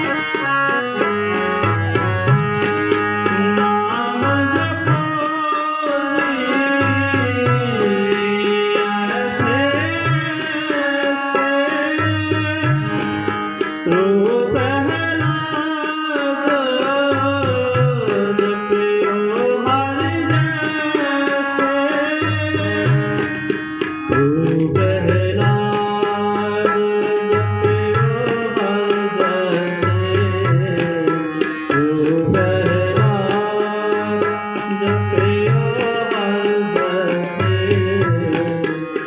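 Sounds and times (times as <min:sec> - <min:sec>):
tabla rhythm: 0:00.0 - 0:39.0
sliding ornamented melody: 0:06.4 - 0:11.9.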